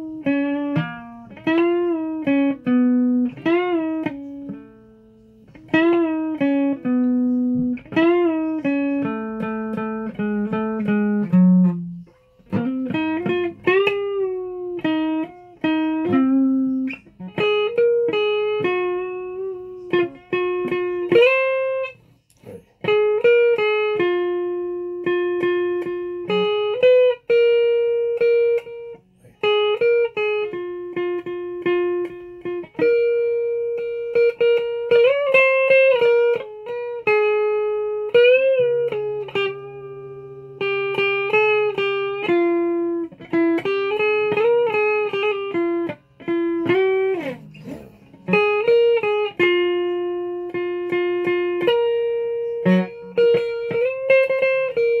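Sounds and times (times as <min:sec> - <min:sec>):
plucked guitar melody: 0:00.0 - 0:55.0
guitar string scrape: 0:46.2 - 0:48.6.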